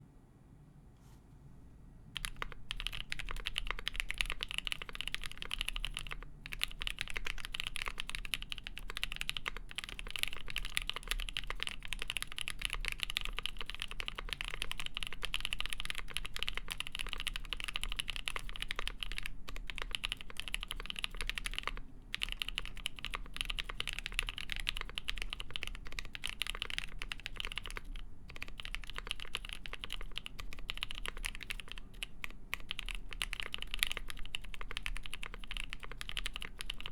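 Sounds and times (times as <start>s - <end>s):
mechanical keyboard typing: 2.2s - 36.9s.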